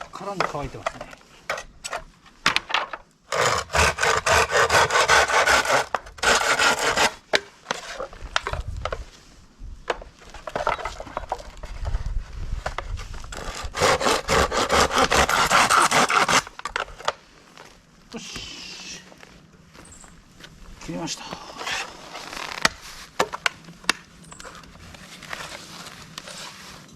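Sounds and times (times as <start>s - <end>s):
hand saw cutting bamboo: 3.3s - 8.0s, 13.4s - 16.6s.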